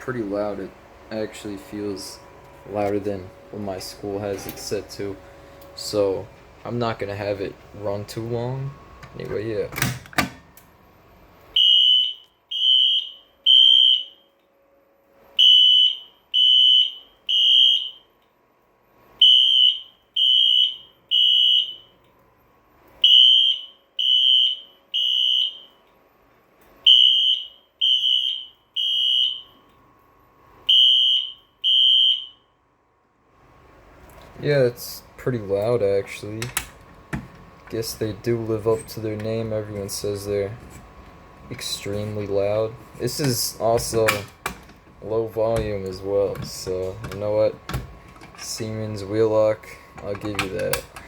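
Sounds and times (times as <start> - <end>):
high-pitched fire alarm horn blasts: 11.5 - 14.5, 15.3 - 18.2, 19.2 - 22.0, 23.0 - 25.8, 26.9 - 29.6, 30.6 - 32.6.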